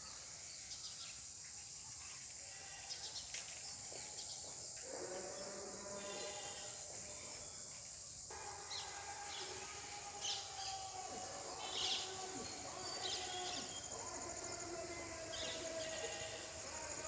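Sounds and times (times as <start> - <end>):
steady background hiss: 4.6 - 17.0
birds chirping: 8.3 - 17.0.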